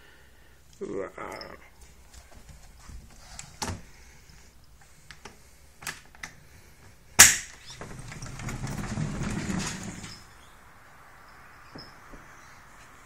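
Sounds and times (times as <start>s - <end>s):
door scraping and rattling: 7.5s - 10.5s.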